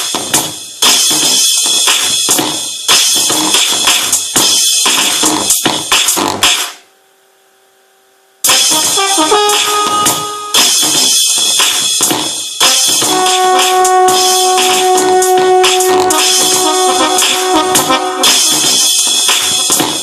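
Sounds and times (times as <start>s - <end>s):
short stepping synth notes: 8.5s - 10.8s, 13.0s - 19.0s
held horn-like synth tone: 8.6s - 10.7s, 13.0s - 19.0s
noisy synthesizer hits: 12.6s - 20.0s.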